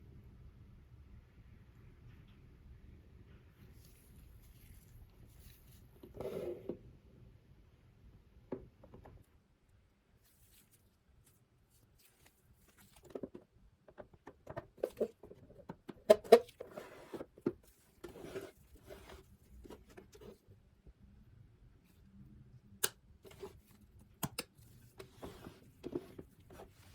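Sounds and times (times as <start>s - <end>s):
soft rustle: 3.5s - 6.6s, 10.1s - 13.4s, 16.5s - 20.6s, 24.6s - 26.9s.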